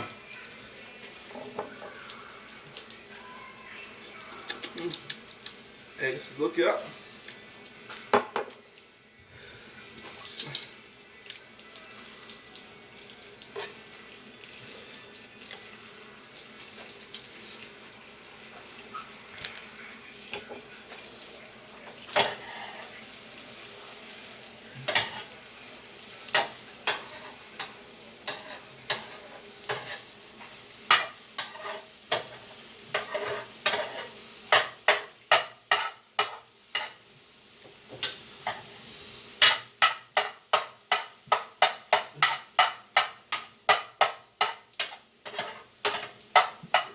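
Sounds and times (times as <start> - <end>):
eggs sizzling in a frying pan: 0.0 - 46.9
utensil scraping a pan: 22.2 - 23.0, 26.3 - 30.1, 30.9 - 34.7, 44.4 - 46.9.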